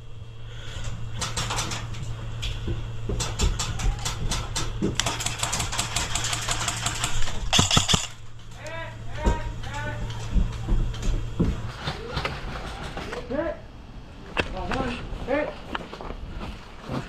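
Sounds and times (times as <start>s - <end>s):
steady low hum: 0.0s - 17.0s
airsoft guns firing bursts: 5.0s - 8.1s.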